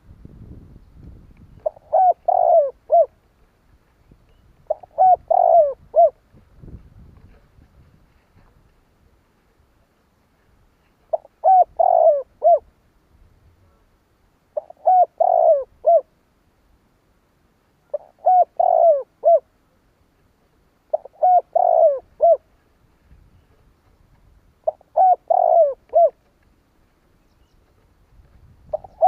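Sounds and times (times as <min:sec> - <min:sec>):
dove cooing: 0:01.6 - 0:03.2, 0:04.7 - 0:06.2, 0:11.1 - 0:12.7, 0:14.6 - 0:16.1, 0:17.9 - 0:19.5, 0:20.9 - 0:22.5, 0:24.6 - 0:26.2, 0:28.6 - 0:29.0.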